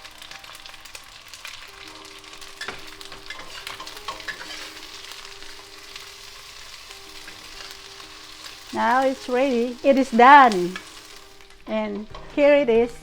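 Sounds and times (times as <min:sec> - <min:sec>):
food sizzling in a pan: 0:00.0 - 0:13.0
spatula scraping a pan: 0:02.6 - 0:12.6.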